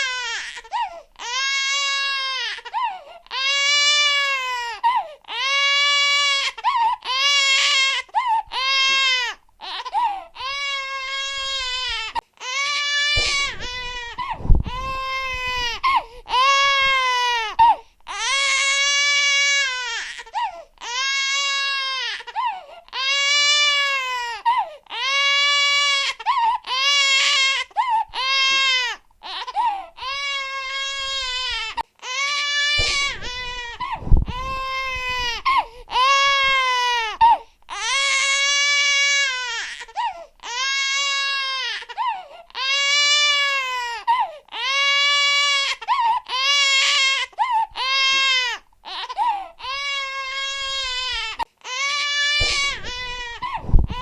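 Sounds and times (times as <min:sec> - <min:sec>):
infant crying: 0:00.0 - 0:54.0
low thumps: 0:13.2 - 0:16.9, 0:32.8 - 0:35.6, 0:52.4 - 0:54.0.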